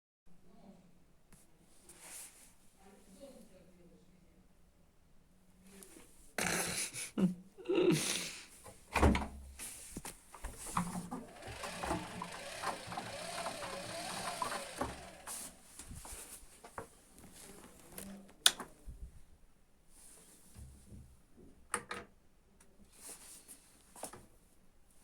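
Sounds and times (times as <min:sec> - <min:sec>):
washing machine motor whine: 0:11.1 - 0:15.7.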